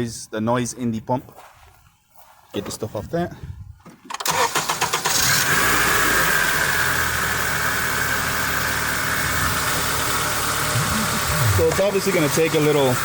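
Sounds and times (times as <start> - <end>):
power steering pump whine: 4.3 - 13.0
car engine idling: 5.2 - 13.0.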